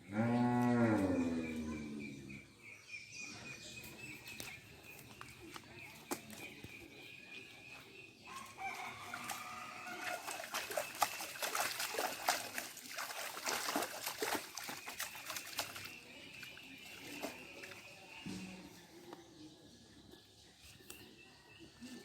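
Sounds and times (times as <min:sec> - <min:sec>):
water splashing and clicking: 0:04.2 - 0:06.8, 0:08.8 - 0:17.9
rooster crowing: 0:08.3 - 0:10.4.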